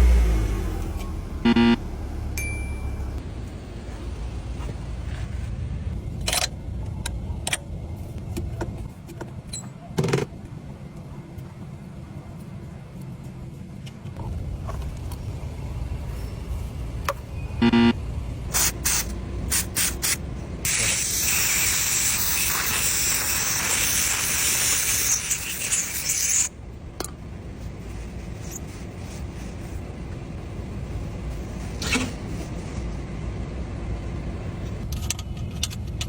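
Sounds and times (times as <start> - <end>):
low rumble: 14.2 - 18.5
aerosol spray can spraying: 18.5 - 26.5.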